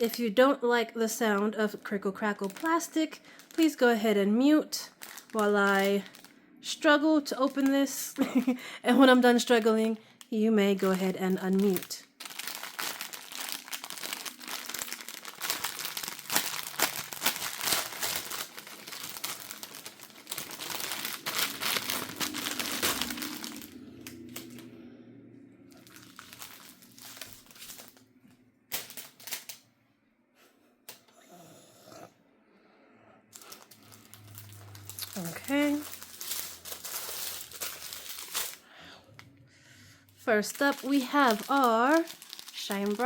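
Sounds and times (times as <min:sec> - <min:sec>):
plastic packaging crinkling: 0:01.2 - 0:06.4, 0:07.2 - 0:24.7, 0:25.7 - 0:28.1, 0:28.7 - 0:29.6, 0:33.3 - 0:38.7, 0:40.1 - 0:43.0.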